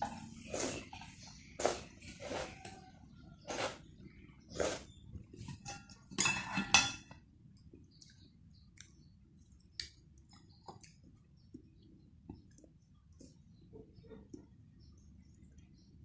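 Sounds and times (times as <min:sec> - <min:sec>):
slurping noodles: 0:00.3 - 0:02.8, 0:03.5 - 0:03.9, 0:04.5 - 0:05.0
chewing clicks: 0:07.6 - 0:12.8.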